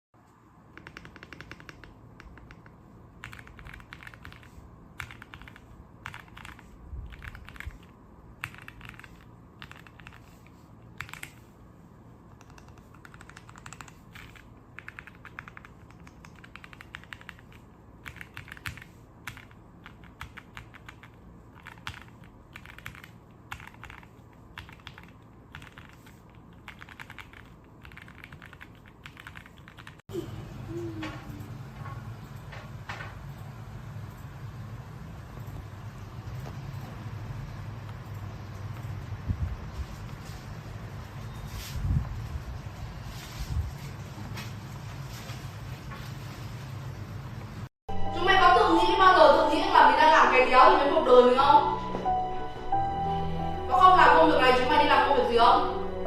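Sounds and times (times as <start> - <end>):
mechanical keyboard typing: 0.8 - 11.5, 12.3 - 30.0.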